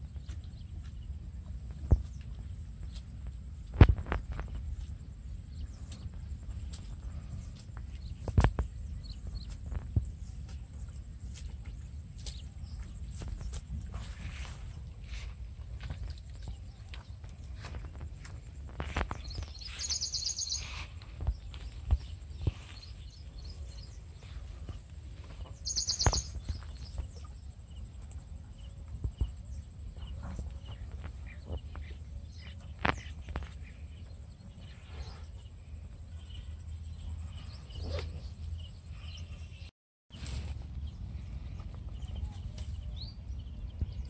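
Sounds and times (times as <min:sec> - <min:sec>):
steady low rumble: 0:00.0 - 0:44.0
rapid bird trill: 0:18.8 - 0:21.4, 0:25.6 - 0:26.8.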